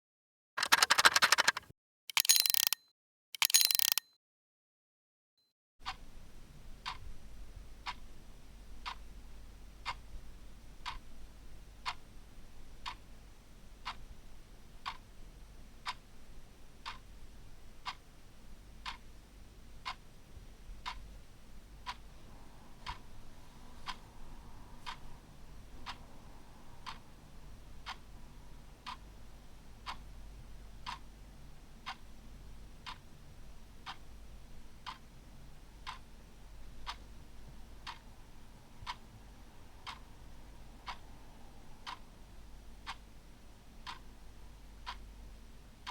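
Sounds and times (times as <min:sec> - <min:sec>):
clock ticking: 0:00.6 - 0:02.8, 0:03.4 - 0:04.1, 0:06.8 - 0:07.0, 0:08.8 - 0:09.0, 0:10.8 - 0:11.0, 0:12.8 - 0:13.0, 0:14.8 - 0:15.1, 0:15.8 - 0:16.0, 0:16.8 - 0:17.0, 0:17.8 - 0:18.0, 0:18.8 - 0:19.0, 0:19.8 - 0:20.0, 0:21.8 - 0:22.0, 0:22.8 - 0:24.0, 0:24.8 - 0:26.0, 0:26.7 - 0:27.2, 0:27.8 - 0:28.2, 0:28.8 - 0:30.2, 0:30.8 - 0:31.1, 0:31.8 - 0:32.2, 0:32.8 - 0:33.2, 0:34.8 - 0:35.2, 0:35.8 - 0:37.1, 0:37.8 - 0:41.2, 0:41.8 - 0:42.1, 0:43.8 - 0:45.1
low steady hum: 0:05.9 - 0:45.9.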